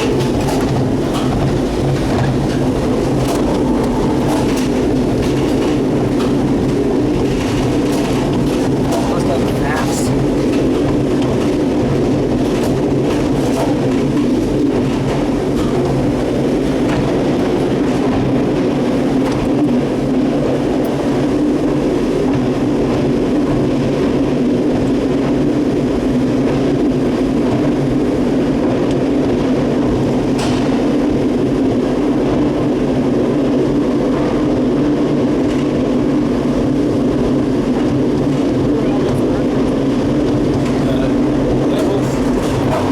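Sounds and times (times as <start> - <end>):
tram mechanical rumble and hum: 0.0 - 42.9.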